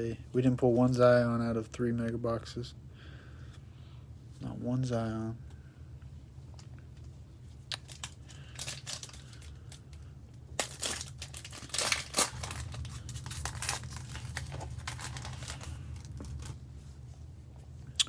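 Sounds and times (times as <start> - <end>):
plastic wrapper crinkling: 7.7 - 10.0, 10.6 - 16.6.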